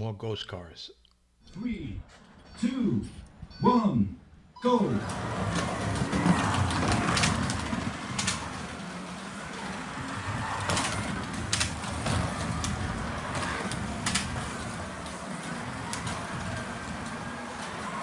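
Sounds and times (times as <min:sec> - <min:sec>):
slot car motors whining: 0:04.6 - 0:18.0.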